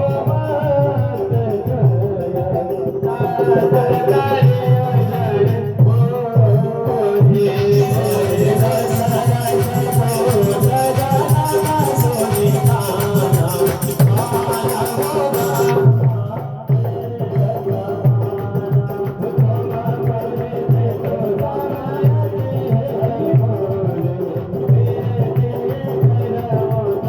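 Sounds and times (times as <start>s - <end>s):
drum beats: 0.0s - 27.0s
shaker rattle: 7.8s - 15.8s.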